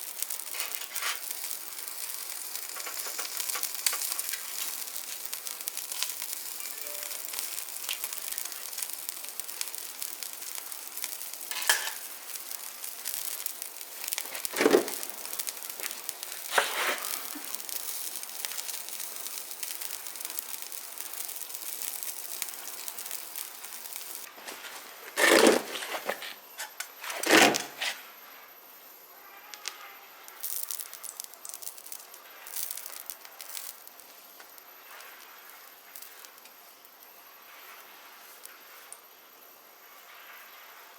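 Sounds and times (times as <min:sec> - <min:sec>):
food sizzling on a grill: 0:00.0 - 0:24.5, 0:27.8 - 0:40.9.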